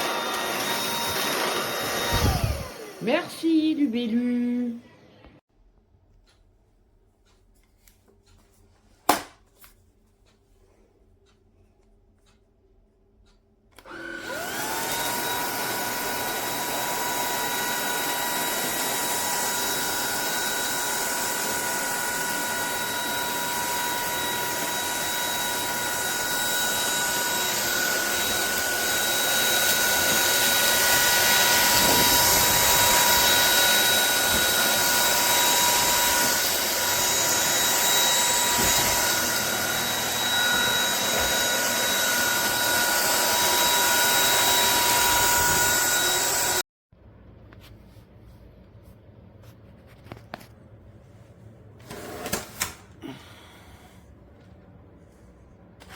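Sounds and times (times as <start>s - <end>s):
stick vacuum cleaner whining: 0.0s - 4.3s, 13.7s - 46.6s, 51.8s - 54.0s.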